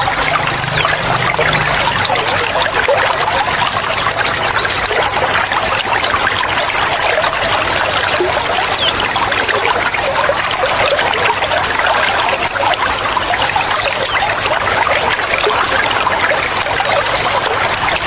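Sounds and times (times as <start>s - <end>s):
birds chirping: 0.0s - 5.4s, 7.4s - 11.2s, 12.4s - 14.5s
water trickling and splashing: 0.0s - 18.0s.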